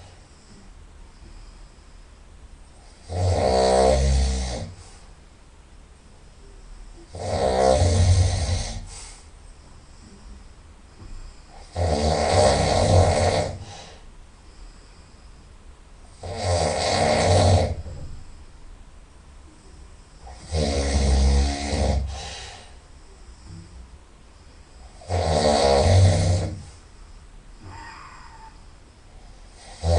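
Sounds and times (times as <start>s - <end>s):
quiet breaths: 0.0s - 29.9s
person snoring loudly: 2.9s - 4.8s, 7.1s - 8.9s, 11.5s - 13.9s, 16.2s - 18.0s, 20.2s - 22.6s, 24.9s - 26.7s, 29.4s - 29.9s.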